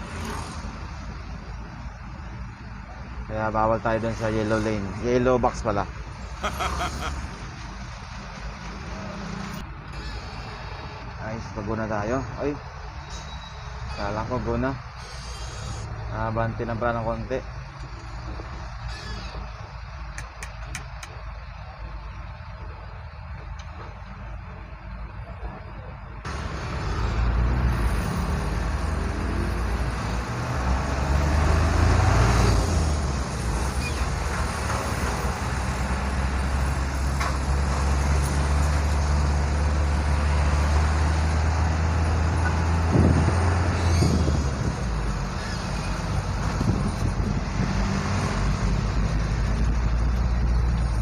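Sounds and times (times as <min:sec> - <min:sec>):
vehicle engine drone: 0:00.0 - 0:51.0.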